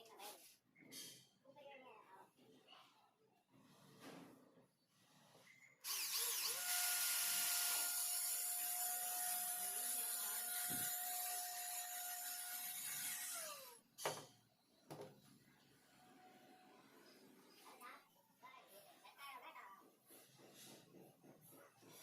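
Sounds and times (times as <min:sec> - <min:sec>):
electric power tool whining: 0:05.8 - 0:13.8.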